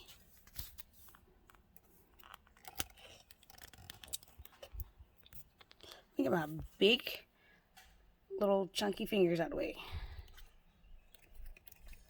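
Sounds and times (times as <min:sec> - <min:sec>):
plastic connectors clicking and rattling: 0:01.1 - 0:06.0.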